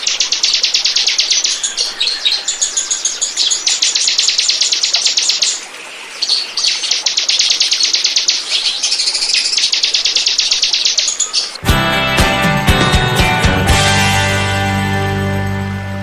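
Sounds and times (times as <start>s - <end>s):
bird calling sharp chirps: 0.0s - 11.6s.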